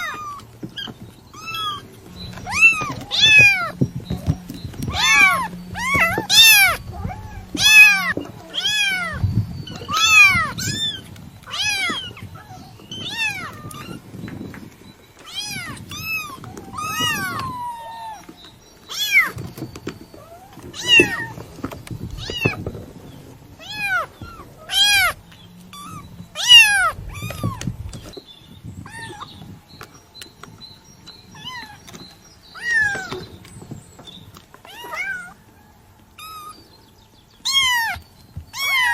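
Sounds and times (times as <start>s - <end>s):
kitten meowing: 2.4s - 3.8s, 4.9s - 14.0s, 15.2s - 18.3s, 20.2s - 21.4s, 23.6s - 27.6s, 32.6s - 33.2s, 34.7s - 35.4s.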